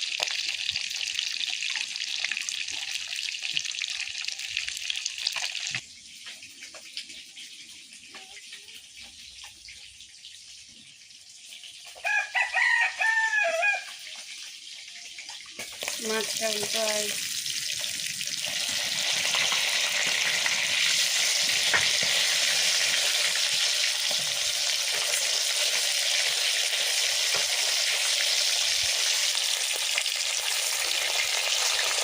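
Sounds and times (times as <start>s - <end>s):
curry sizzling in a pan: 0.0s - 32.0s
rooster crowing: 12.0s - 14.0s.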